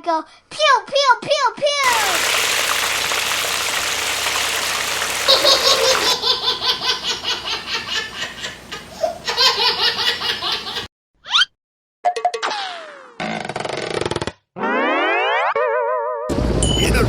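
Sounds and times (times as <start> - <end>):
steady hiss: 1.8 - 10.9
hearty laughter: 5.3 - 10.9.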